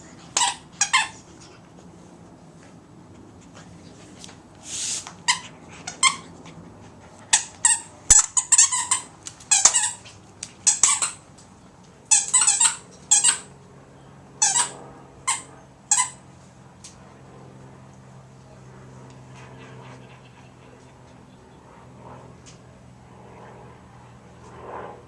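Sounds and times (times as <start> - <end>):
squeaky toy squeaks: 0.4 - 1.2, 5.3 - 6.3, 7.3 - 10.0, 10.7 - 11.2, 12.1 - 13.5, 14.4 - 16.2.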